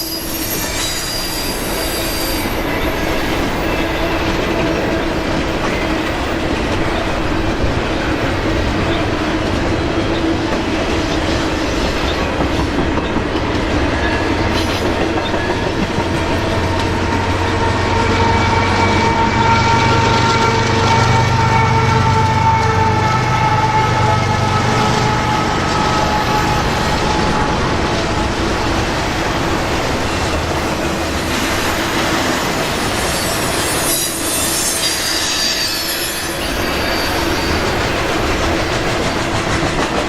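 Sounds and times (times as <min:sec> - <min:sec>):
wheel squeal: 0:00.0 - 0:04.9, 0:32.8 - 0:38.0
freight train cars rolling: 0:00.0 - 0:40.0.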